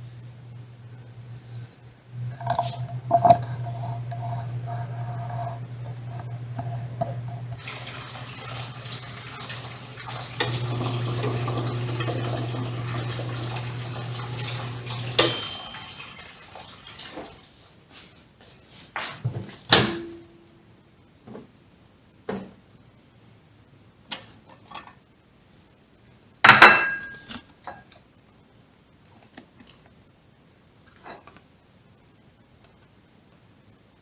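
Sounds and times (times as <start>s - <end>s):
microwave oven humming: 0.0s - 17.5s.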